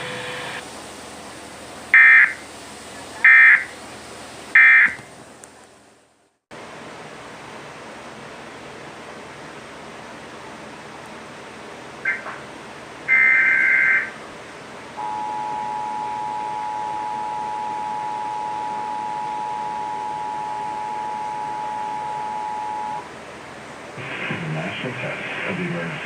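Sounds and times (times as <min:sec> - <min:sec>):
two-tone alert signal: 0:15.0 - 0:23.0.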